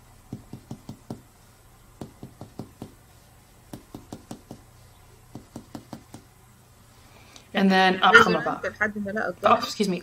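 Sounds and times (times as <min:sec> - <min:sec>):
finger tapping on chest: 0:00.3 - 0:01.3, 0:02.0 - 0:03.1, 0:03.7 - 0:06.3.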